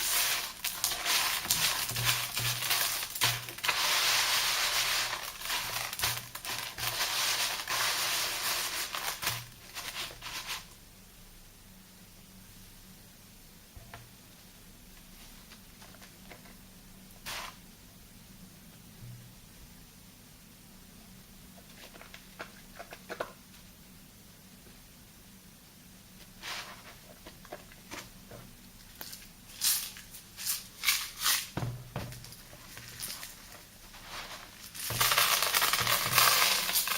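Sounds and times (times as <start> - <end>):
gritty scratching of salt lather: 0.0 - 10.7, 26.4 - 27.2, 29.0 - 31.5, 32.7 - 36.9
soft crackles: 32.2 - 36.9.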